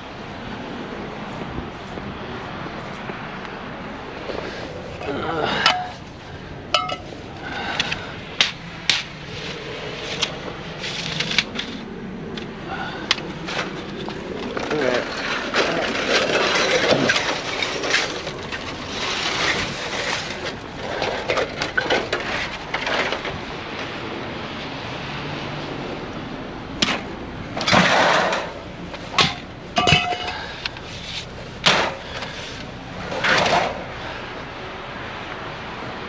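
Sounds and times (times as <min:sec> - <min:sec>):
scrap metal clattering: 0:04.4 - 0:11.8, 0:12.7 - 0:23.5, 0:26.8 - 0:34.1
metal clanks and bangs: 0:05.5 - 0:06.1, 0:06.7 - 0:09.1, 0:13.0 - 0:23.4, 0:26.8 - 0:33.9.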